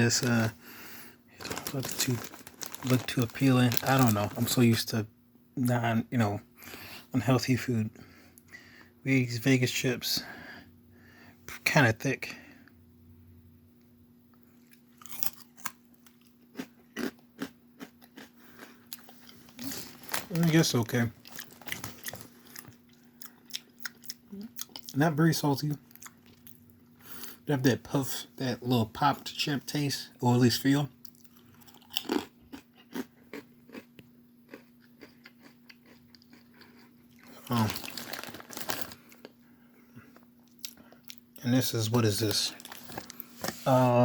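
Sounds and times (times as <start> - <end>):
person chewing crunchy crisps: 0.0 - 0.6, 1.4 - 4.8, 14.6 - 25.0, 25.8 - 27.4, 31.0 - 39.4, 40.1 - 41.4, 42.2 - 43.7.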